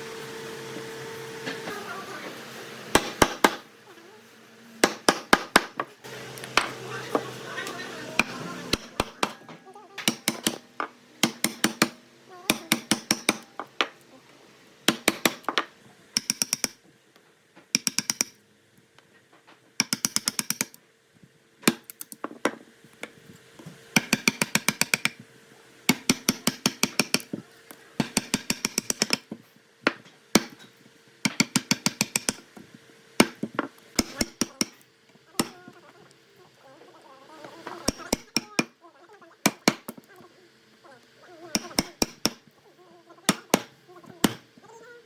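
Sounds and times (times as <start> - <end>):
faint steady hum: 0.0 - 45.0
rapid sharp tool strikes: 2.9 - 3.7, 4.8 - 6.8, 8.2 - 9.4, 10.0 - 13.9, 14.9 - 15.6, 16.2 - 16.8, 17.8 - 18.4, 19.8 - 20.8, 21.6 - 22.1, 24.0 - 25.2, 25.9 - 27.4, 28.0 - 32.6, 33.2 - 34.8, 35.4 - 35.6, 37.8 - 38.8, 39.4 - 40.0, 41.6 - 42.5, 43.3 - 44.6.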